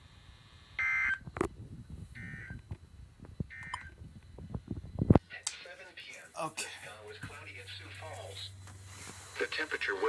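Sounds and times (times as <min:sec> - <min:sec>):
short electronic beeps: 0:00.8 - 0:01.2, 0:03.5 - 0:04.0.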